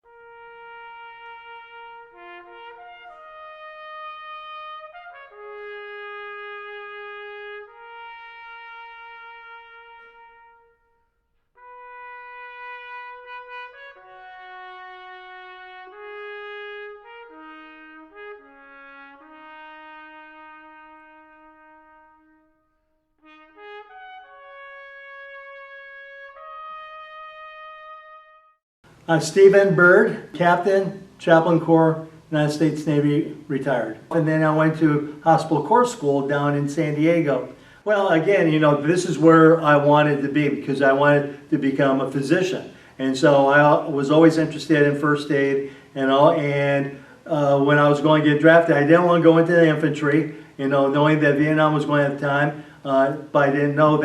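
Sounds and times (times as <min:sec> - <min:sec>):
slow brass music with trumpet: 0:00.0 - 0:28.6, 0:29.6 - 0:41.6.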